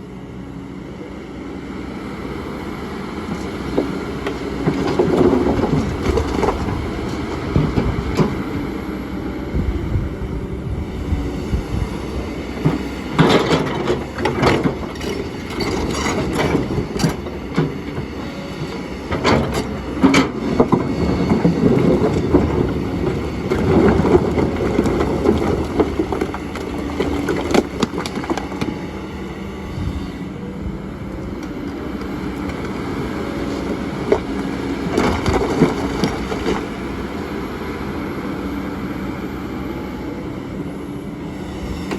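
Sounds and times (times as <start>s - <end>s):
excavator diesel engine running: 0.0s - 41.9s
bucket clanking and scraping stones: 3.3s - 8.4s, 12.5s - 29.2s, 31.6s - 37.0s.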